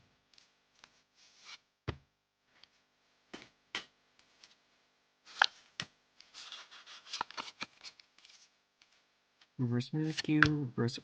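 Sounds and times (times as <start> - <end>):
cards clicking and tapping: 5.3 - 8.0, 10.0 - 10.6
papery rustle: 6.3 - 8.5.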